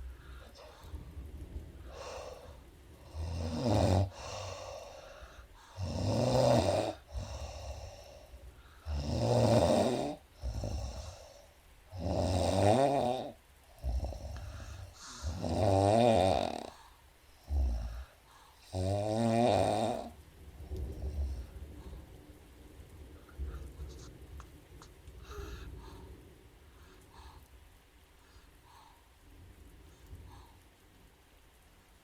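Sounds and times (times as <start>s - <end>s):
soft breathing: 0.0s - 6.0s, 6.8s - 9.0s, 10.2s - 11.9s, 13.4s - 15.4s, 16.6s - 18.8s, 19.9s - 32.0s
woman snoring: 1.9s - 20.2s, 25.2s - 25.7s.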